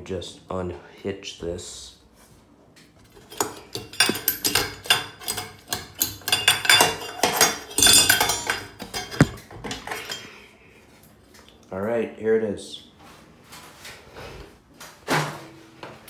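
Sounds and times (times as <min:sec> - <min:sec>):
metallic clinking and rattling: 0:03.2 - 0:10.2.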